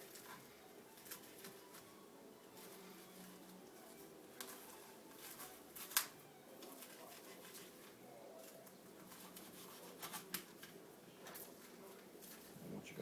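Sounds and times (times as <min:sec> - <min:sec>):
knife scraping meat: 0:09.0 - 0:10.6.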